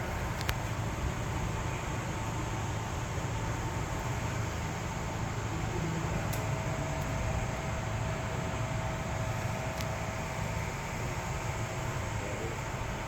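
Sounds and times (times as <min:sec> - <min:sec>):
faint constant whine: 0:00.0 - 0:13.0
mechanical hum and hiss: 0:00.0 - 0:13.0.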